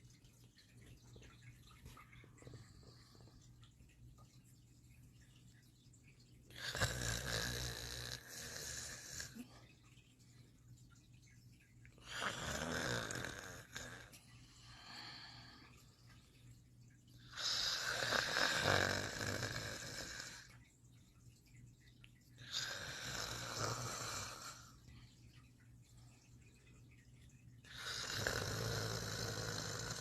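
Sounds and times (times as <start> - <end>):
person snoring: 6.6 - 9.5, 12.0 - 15.4, 17.4 - 20.5, 22.5 - 24.7, 27.7 - 30.0.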